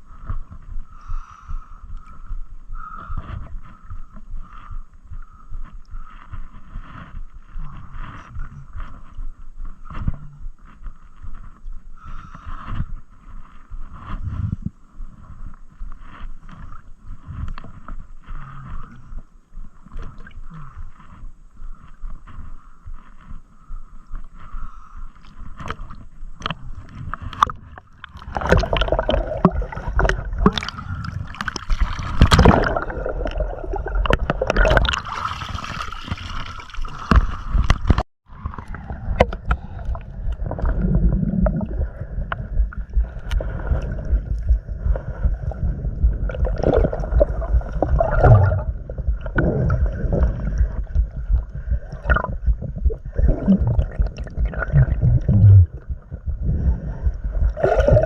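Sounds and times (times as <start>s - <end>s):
water sloshing and gurgling: 0.0s - 58.0s
low rumble: 38.3s - 58.0s.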